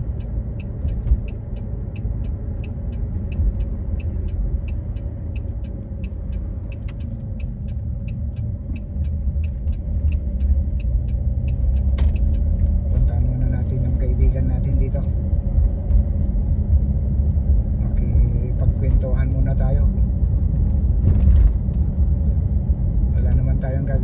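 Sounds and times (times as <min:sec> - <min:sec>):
fast regular ticking: 0:00.0 - 0:11.9.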